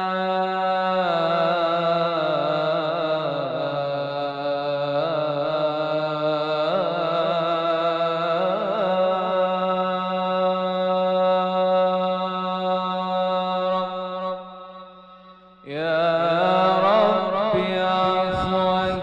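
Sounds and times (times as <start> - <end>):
man singing melismatic chant: 0.0 - 19.0
steady drone note: 16.3 - 19.0.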